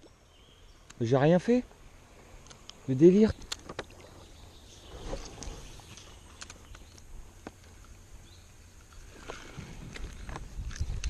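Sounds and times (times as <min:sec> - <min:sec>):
fishing tackle clicks: 0:05.9 - 0:08.0.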